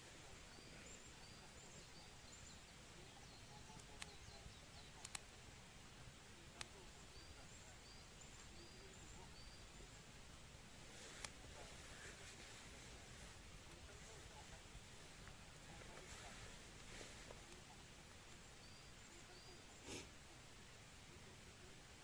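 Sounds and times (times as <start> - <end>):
wood fire crackling: 0.0 - 22.0.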